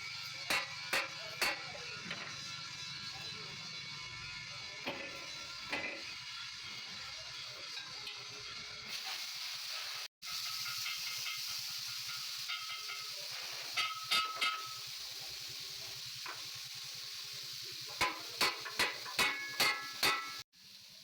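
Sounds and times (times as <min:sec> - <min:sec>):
steady sizzling hiss: 0:08.8 - 0:21.0.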